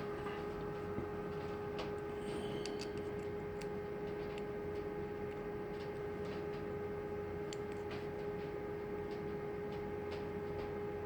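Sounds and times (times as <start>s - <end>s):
steady background hum: 0.0s - 11.0s.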